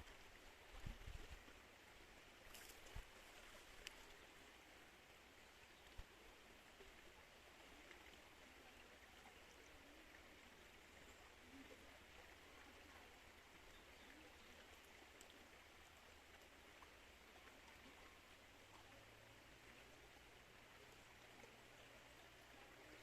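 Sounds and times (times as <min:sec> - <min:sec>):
small water splashes: 0:00.0 - 0:04.6
river water flowing: 0:00.0 - 0:23.0.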